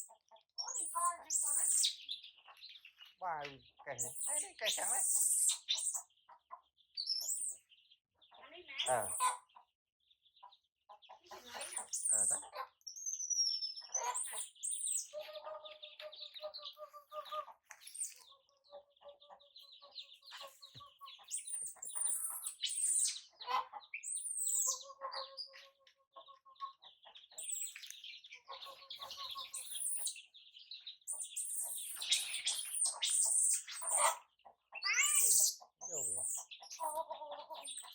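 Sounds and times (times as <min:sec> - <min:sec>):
baby chicks peeping: 0:00.0 - 0:37.9
low rapid trilling call: 0:34.8 - 0:36.4.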